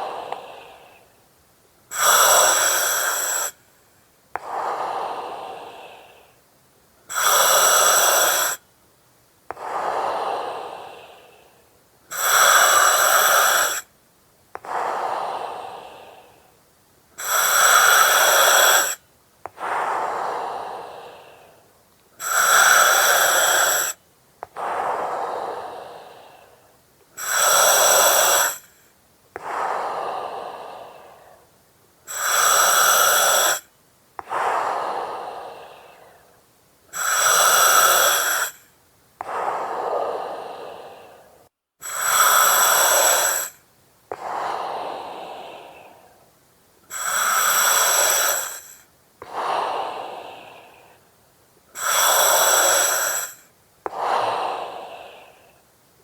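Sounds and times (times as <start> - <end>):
breathing through oxygen mask: 0.0 - 1.1, 1.9 - 3.6, 7.1 - 8.6, 9.5 - 13.9, 17.2 - 31.5, 32.1 - 46.2, 46.9 - 51.0, 51.7 - 55.6
mask regulator hiss: 1.9 - 3.7, 7.1 - 8.6, 12.1 - 13.9, 17.2 - 19.0, 22.2 - 26.6, 27.2 - 31.4, 32.1 - 36.3, 36.9 - 46.1, 46.9 - 51.0, 51.8 - 55.6.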